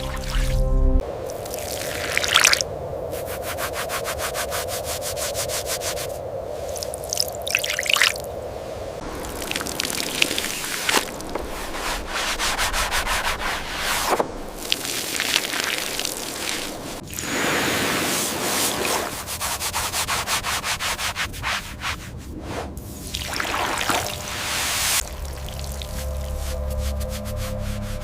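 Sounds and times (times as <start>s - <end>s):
scrubbing a hard surface: 10.1s - 17.0s, 18.0s - 22.4s.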